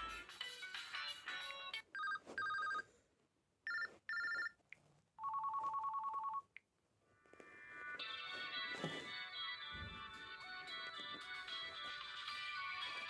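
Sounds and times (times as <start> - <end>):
musical ringtone: 0.1 - 2.8, 7.4 - 13.0
telephone ring ringtone: 1.9 - 2.9, 3.7 - 4.6, 5.2 - 6.5.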